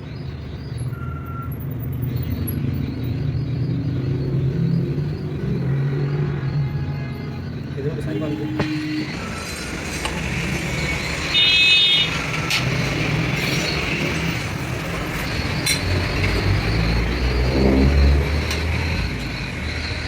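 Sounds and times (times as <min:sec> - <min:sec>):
sharp metallic clicks: 0:12.1 - 0:16.4.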